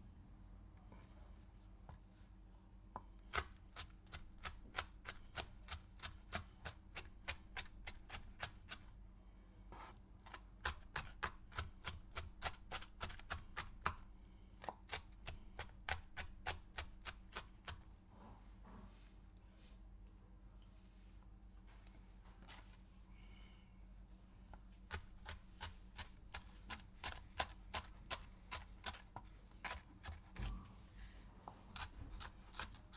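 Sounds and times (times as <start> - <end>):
knife chopping a pepper: 3.2 - 8.9, 10.2 - 17.9, 24.9 - 30.7, 31.7 - 32.9.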